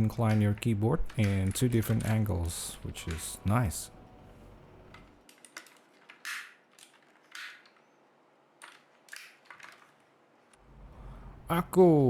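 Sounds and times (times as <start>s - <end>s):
keyboard scraping and clicking: 0.0s - 3.8s, 4.9s - 8.0s, 8.6s - 10.1s.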